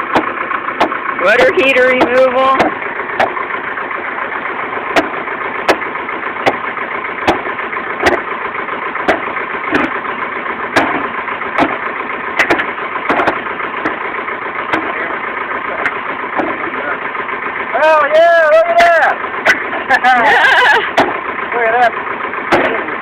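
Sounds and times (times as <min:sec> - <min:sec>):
sharp knocks: 0:00.0 - 0:03.4, 0:04.9 - 0:06.6, 0:07.2 - 0:08.3, 0:09.0 - 0:10.0, 0:10.7 - 0:14.0, 0:14.7 - 0:15.1, 0:15.8 - 0:16.7, 0:20.9 - 0:21.2, 0:22.5 - 0:23.0
engine idling: 0:00.0 - 0:23.0.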